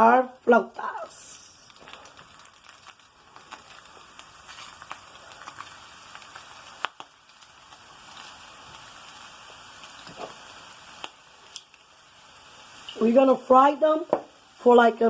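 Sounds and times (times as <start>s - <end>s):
food sizzling in hot oil: 0.0s - 15.0s.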